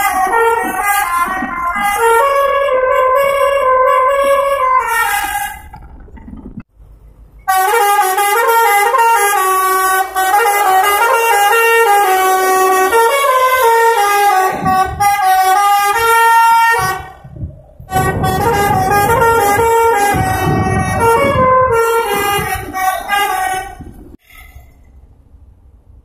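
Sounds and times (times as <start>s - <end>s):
musical air horn tune: 0.0s - 5.7s, 7.5s - 17.3s, 17.9s - 24.6s
low rumble: 0.1s - 7.4s, 13.8s - 16.2s, 16.8s - 26.0s.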